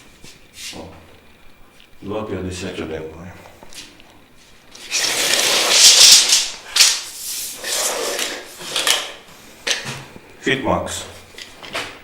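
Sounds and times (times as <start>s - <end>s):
rubbing and scraping: 4.8s - 9.2s.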